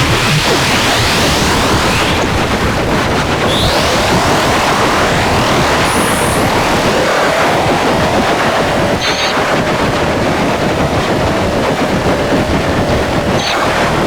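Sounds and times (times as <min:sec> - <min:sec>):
distorted crackling static noise: 0:00.0 - 0:14.0
brief high-pitched tones: 0:03.5 - 0:10.0
faint wavering tone: 0:03.5 - 0:11.6.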